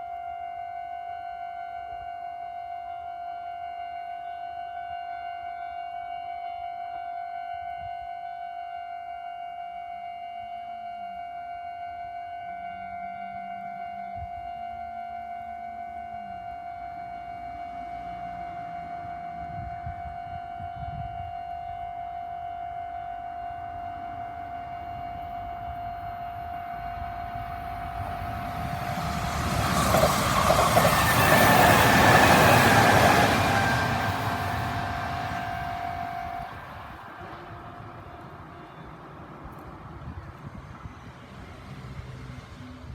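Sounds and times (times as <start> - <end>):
train rumbling past: 16.8 - 21.2, 23.1 - 42.9.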